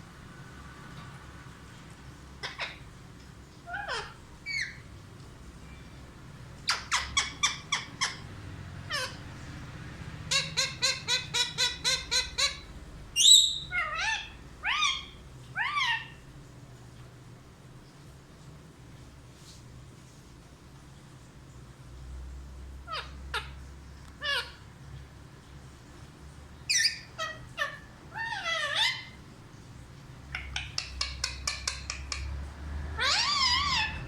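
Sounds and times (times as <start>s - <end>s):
parrot calling: 2.4s - 2.8s, 3.6s - 4.9s, 6.6s - 9.5s, 10.1s - 16.3s, 22.8s - 24.7s, 26.6s - 29.3s, 30.2s - 34.0s.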